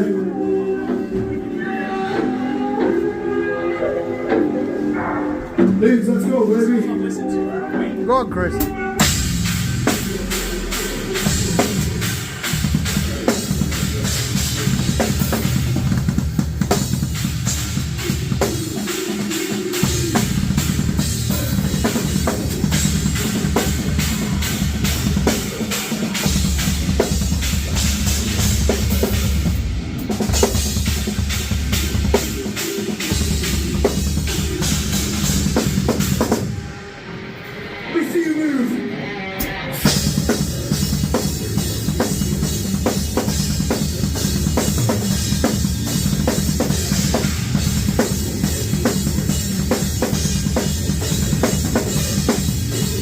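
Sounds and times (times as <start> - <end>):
cymbals: 8.4 - 37.8.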